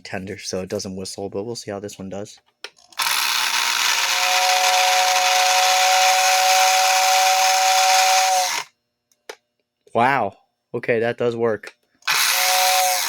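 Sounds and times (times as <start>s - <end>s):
electric fan motor whirring: 3.0s - 8.7s, 12.1s - 13.0s.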